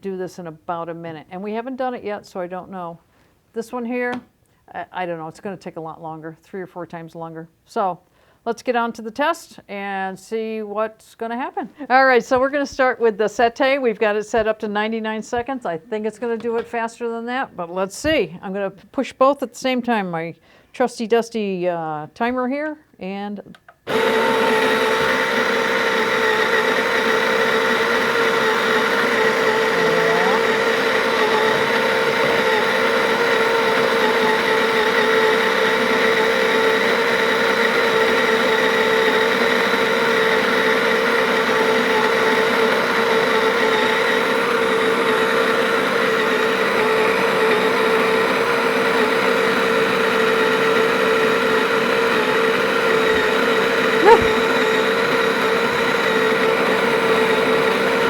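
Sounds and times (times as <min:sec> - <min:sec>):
coffee grinder whine: 0:23.9 - 0:58.0.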